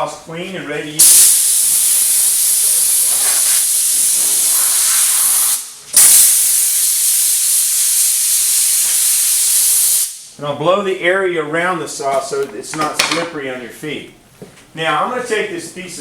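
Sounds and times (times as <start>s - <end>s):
compressed air blow gun hissing: 1.0s - 10.3s.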